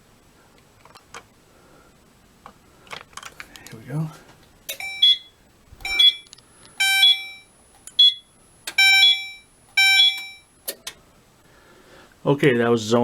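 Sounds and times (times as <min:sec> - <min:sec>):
fire alarm blasts: 0:04.8 - 0:10.5.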